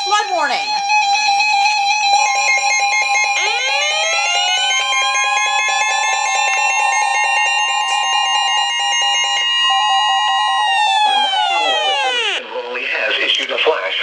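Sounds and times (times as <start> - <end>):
steady electronic alarm tones: 0.0 - 12.8
rising sweep of tones: 2.2 - 12.5.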